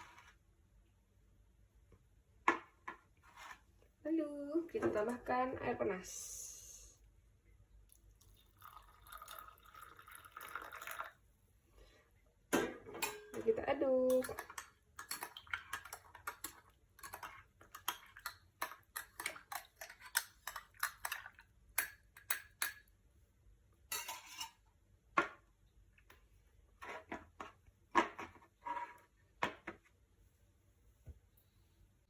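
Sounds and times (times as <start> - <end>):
spoon clinking against glass: 13.0 - 13.4.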